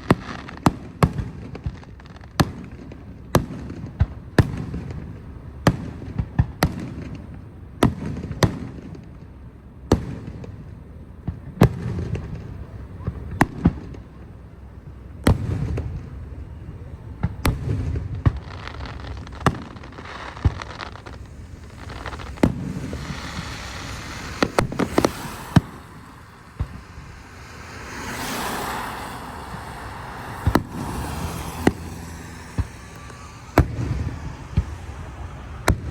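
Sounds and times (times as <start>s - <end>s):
fireworks bangs: 0.0s - 35.9s
fireworks crackling: 0.0s - 35.9s
deep rumbling booms: 21.1s - 35.9s.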